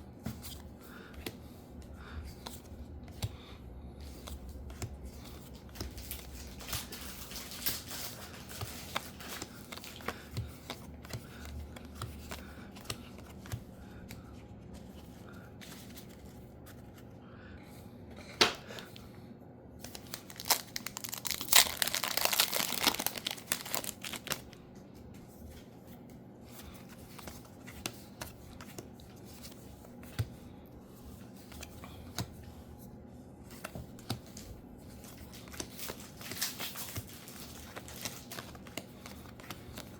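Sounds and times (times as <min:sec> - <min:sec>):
wrapper tearing: 0:19.9 - 0:24.4
wrappers crinkling: 0:19.9 - 0:24.6, 0:35.2 - 0:39.9.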